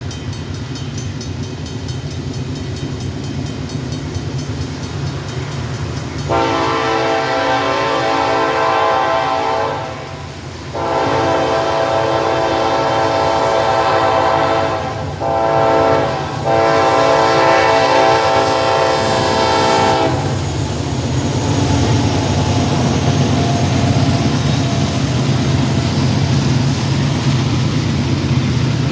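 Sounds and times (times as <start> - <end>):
train rumbling by: 0.0 - 28.9
locomotive air horn: 6.3 - 20.5.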